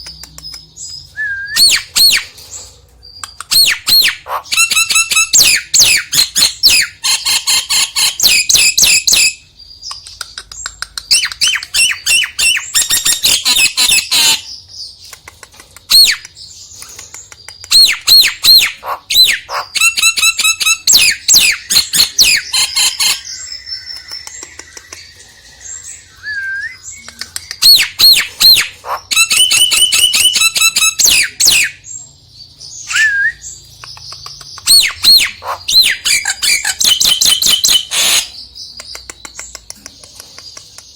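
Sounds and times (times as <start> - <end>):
myna calling and whistling: 0.0 - 2.3, 17.5 - 31.9, 32.8 - 40.8.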